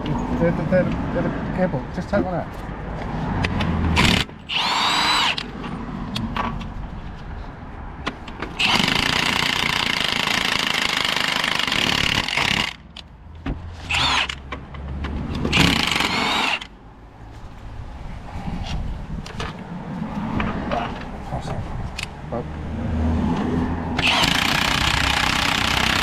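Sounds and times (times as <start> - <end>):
impact wrench running: 4.0 - 5.5, 8.6 - 12.8, 15.5 - 16.7, 24.0 - 26.0.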